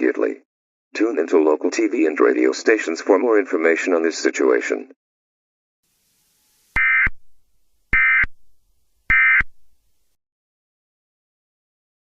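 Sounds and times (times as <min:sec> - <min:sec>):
digital data tone bursts: 0:06.8 - 0:08.4, 0:09.1 - 0:09.6.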